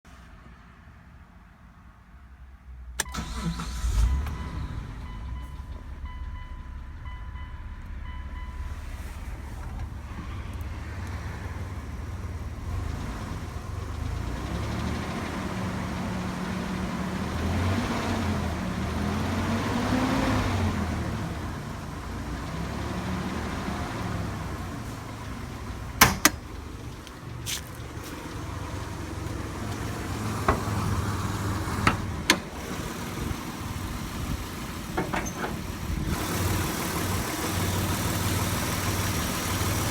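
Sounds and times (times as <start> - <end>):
car engine humming: 3.0 - 39.9
sharp clicks or knocks: 26.0 - 26.5.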